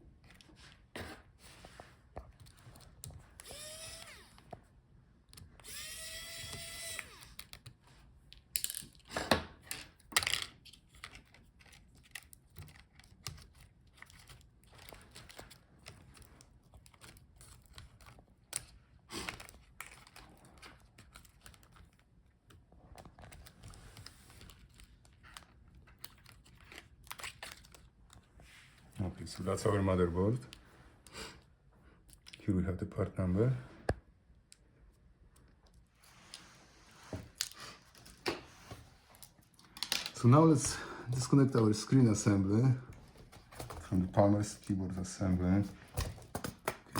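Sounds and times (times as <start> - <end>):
electric screwdriver whirring: 3.4 - 4.5, 5.6 - 7.6
laptop parts clicking and knocking: 5.2 - 18.8, 45.8 - 46.9.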